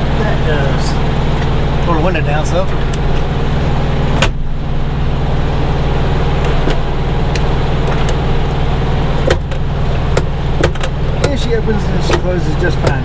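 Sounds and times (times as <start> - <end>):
diesel engine idling: 0.0 - 13.0
power window running down: 5.6 - 13.0
door clicks: 6.4 - 8.3.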